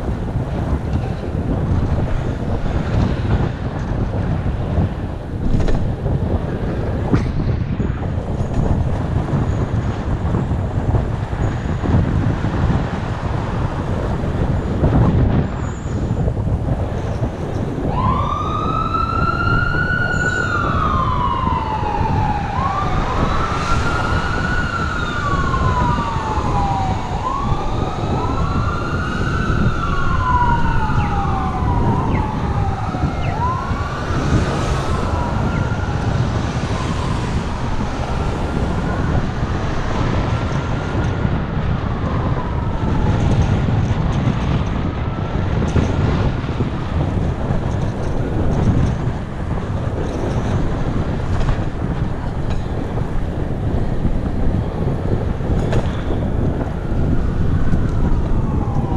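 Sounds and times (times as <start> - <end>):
wind rumble on microphone: 0.0 - 58.9
fire truck siren wailing: 11.5 - 58.9.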